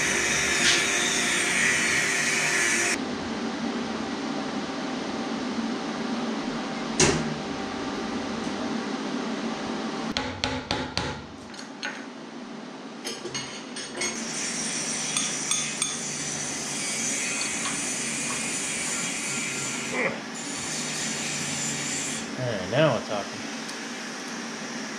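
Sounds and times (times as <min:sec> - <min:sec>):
hammer strikes on metal: 0:10.2 - 0:11.2.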